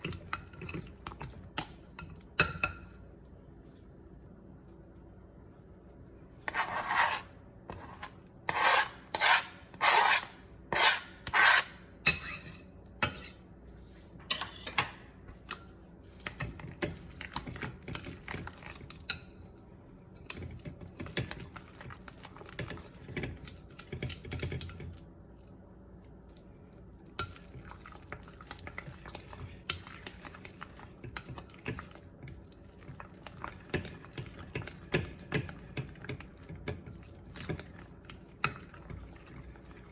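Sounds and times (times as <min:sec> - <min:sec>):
utensil scraping a dish: 0:06.4 - 0:13.4.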